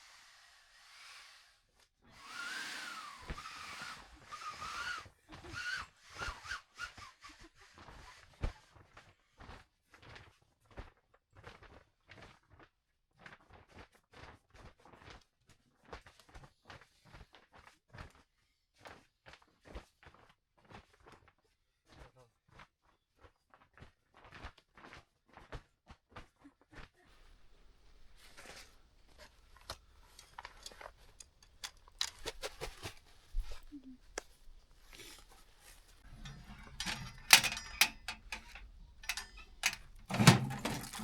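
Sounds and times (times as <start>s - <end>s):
light knocks and rustles: 27.2s - 41.0s.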